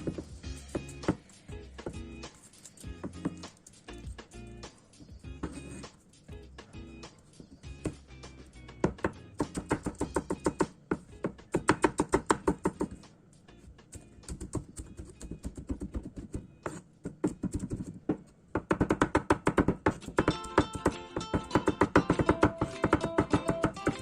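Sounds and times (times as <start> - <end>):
plucked-string music: 20.2 - 24.0.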